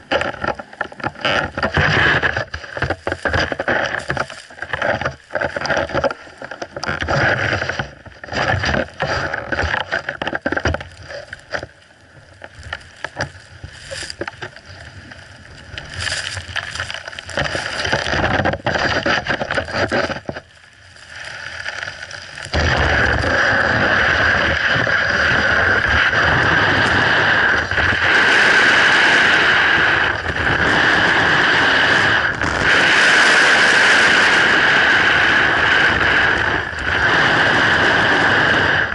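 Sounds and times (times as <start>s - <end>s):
snowboard scraping on ice: 0.0s - 11.3s, 15.6s - 38.9s
wind buffeting microphone: 22.5s - 38.9s.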